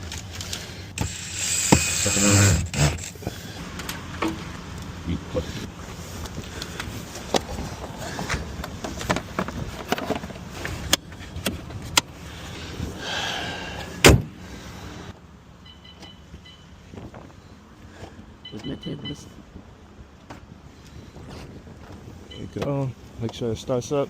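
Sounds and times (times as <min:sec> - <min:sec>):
brief whirr: 0:01.0 - 0:03.2
clicks and knocks handling parts: 0:02.7 - 0:05.0, 0:06.2 - 0:12.1
loud heavy thump: 0:14.0 - 0:14.4.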